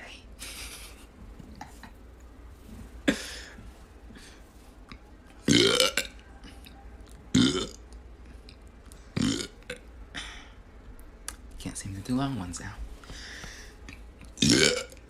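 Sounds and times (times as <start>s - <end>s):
man burping: 5.5s - 6.1s, 7.4s - 7.8s, 9.2s - 9.8s, 14.4s - 15.0s.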